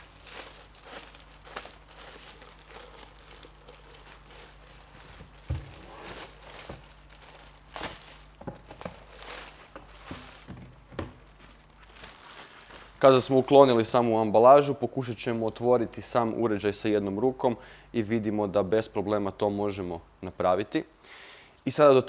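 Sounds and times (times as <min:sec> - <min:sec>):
packaging crinkling and rustling: 0:00.0 - 0:14.0
soft thump: 0:05.4 - 0:05.8.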